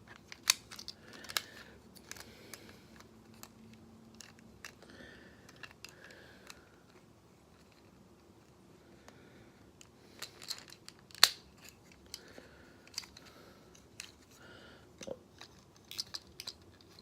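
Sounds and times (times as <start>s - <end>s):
plastic toy parts clicking: 0.0s - 4.8s, 5.4s - 7.0s, 9.8s - 14.3s, 15.0s - 17.0s.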